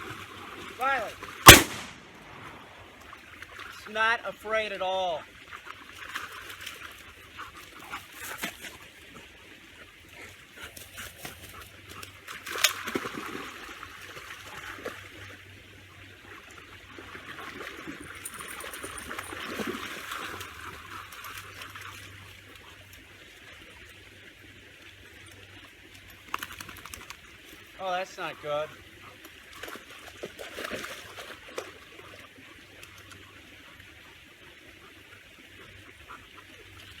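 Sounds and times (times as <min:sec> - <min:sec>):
water splashing: 0:00.0 - 0:08.8, 0:12.3 - 0:15.4, 0:16.8 - 0:28.7, 0:29.5 - 0:33.3.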